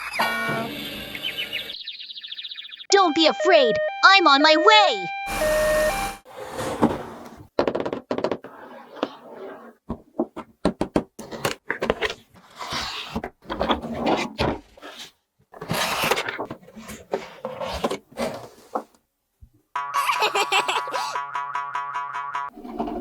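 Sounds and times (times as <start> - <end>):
plastic toys clicking and scraping: 15.6 - 19.0.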